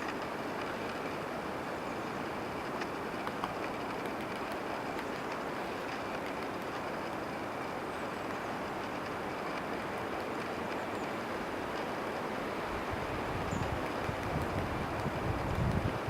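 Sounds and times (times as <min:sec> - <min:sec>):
steady rushing outdoor noise: 0:00.0 - 0:16.0
wind buffeting microphone: 0:08.6 - 0:16.0.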